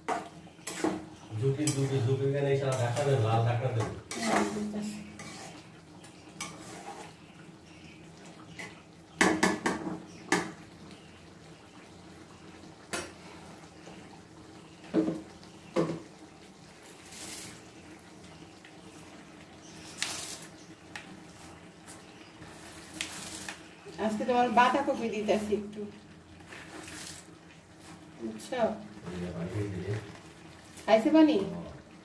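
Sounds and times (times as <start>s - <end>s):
pots and pans clattering: 0.0s - 5.5s, 8.6s - 10.6s, 14.9s - 16.1s.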